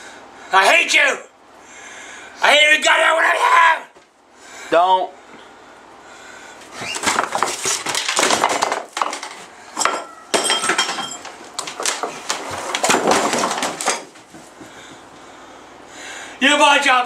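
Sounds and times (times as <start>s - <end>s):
dishes and pans clattering and crashing: 7.0s - 14.2s
metallic ringing clink: 9.8s - 11.3s.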